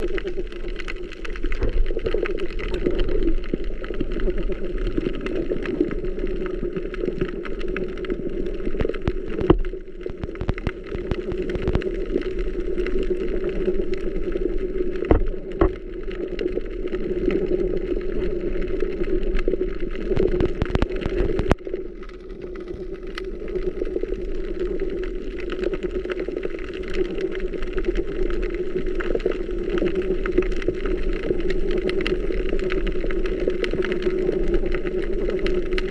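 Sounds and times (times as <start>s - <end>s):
underwater hum and rumble: 0.0s - 35.9s
sharp underwater clicks: 5.0s - 13.4s, 19.4s - 23.6s.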